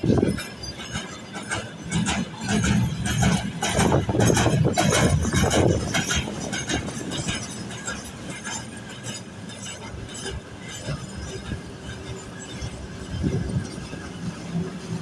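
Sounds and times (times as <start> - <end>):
freight train wagons rumbling: 0.0 - 15.0
wheels and couplings clanking: 0.0 - 15.0.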